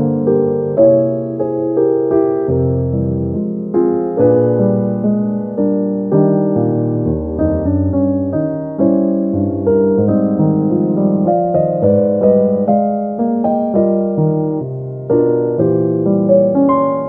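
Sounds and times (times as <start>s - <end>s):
slow piano music: 0.0s - 17.0s.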